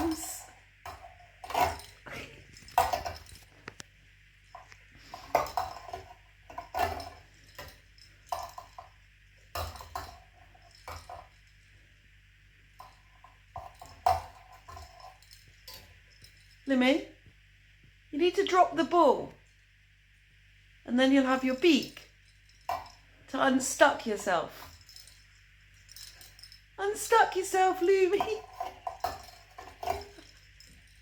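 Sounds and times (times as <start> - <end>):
metallic cage clinks and rattles: 0.0 - 11.9, 12.7 - 16.7, 21.7 - 31.0.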